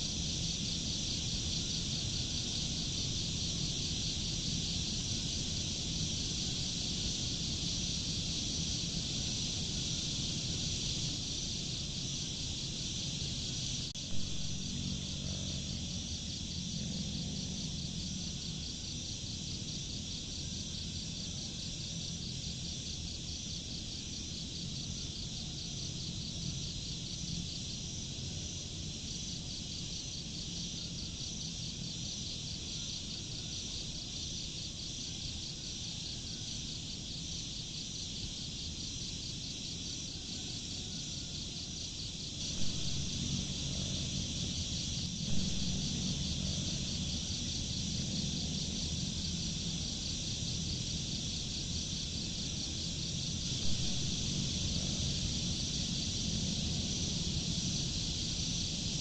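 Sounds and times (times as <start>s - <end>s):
low background rumble: 0.0s - 20.6s, 42.3s - 59.0s
crickets chirring: 0.0s - 59.0s.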